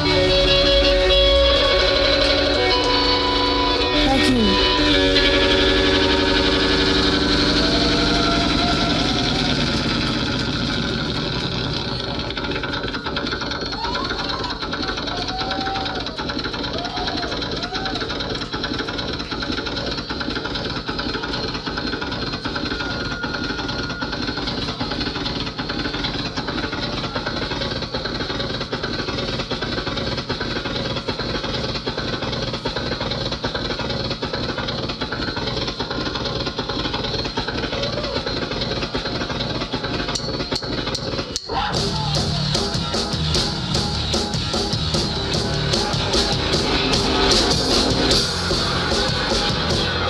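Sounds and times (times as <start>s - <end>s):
constant hum from stage: 0.0s - 50.0s
crowd chatter: 3.8s - 10.7s, 41.5s - 50.0s.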